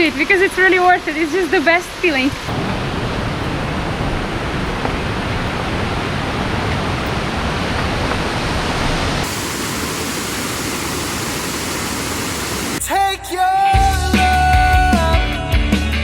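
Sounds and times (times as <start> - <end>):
waterfall rushing: 9.2 - 12.9.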